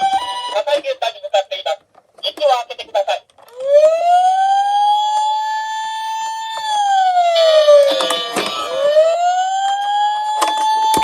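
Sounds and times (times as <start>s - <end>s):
toy electronic siren wailing: 3.5s - 11.0s
plastic toy cars clattering: 7.4s - 8.8s.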